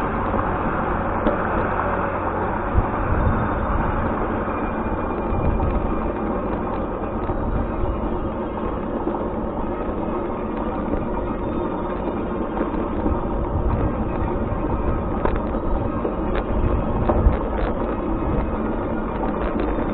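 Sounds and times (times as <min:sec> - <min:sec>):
vehicle engine and road rumble: 0:00.0 - 0:19.9.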